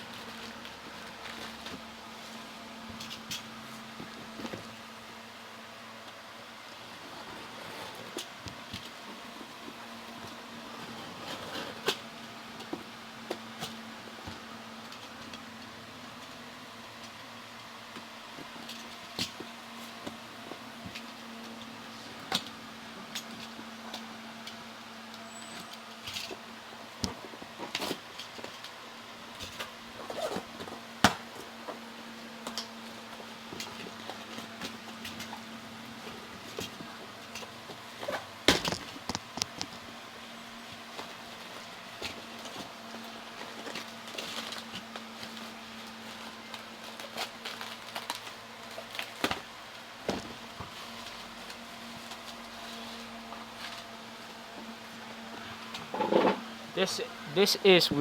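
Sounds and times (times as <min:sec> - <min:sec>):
packaging rustling: 0:42.4 - 0:53.9.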